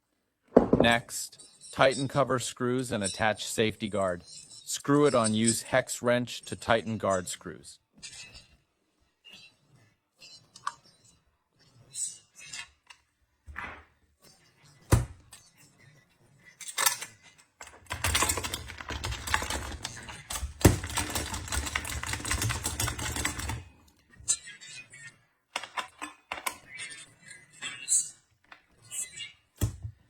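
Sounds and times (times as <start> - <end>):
hex wrench clicking and rattling: 16.6 - 23.6.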